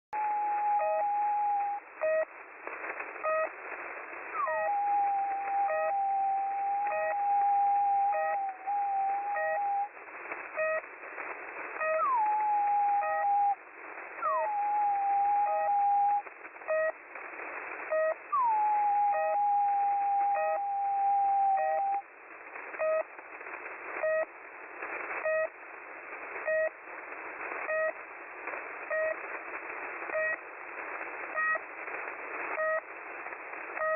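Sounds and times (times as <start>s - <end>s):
radio static: 0.2s - 33.9s
whistled notes sliding down: 4.4s - 9.9s, 11.9s - 13.6s, 14.2s - 16.2s, 18.4s - 22.0s
short radio beacon pips: 4.4s - 10.0s, 11.8s - 13.6s, 14.2s - 16.9s, 17.9s - 22.1s.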